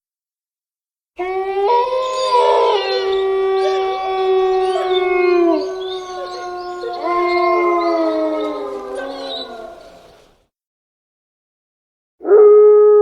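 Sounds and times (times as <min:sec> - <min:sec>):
werewolf howls: 0:01.2 - 0:10.2.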